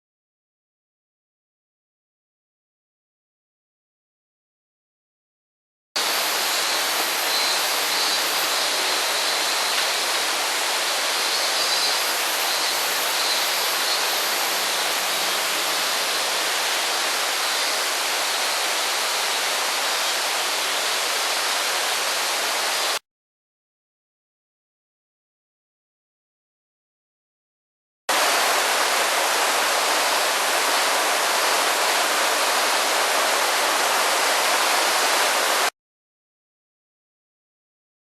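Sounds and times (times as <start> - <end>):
waterfall rushing: 6.0 - 23.0, 28.1 - 35.7.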